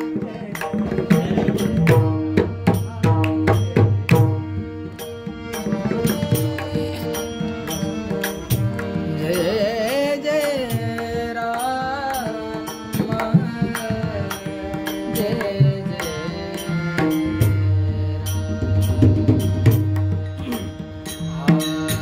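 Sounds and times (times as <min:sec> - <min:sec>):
man singing devotional song: 0:00.0 - 0:22.0
held drone: 0:00.5 - 0:09.5.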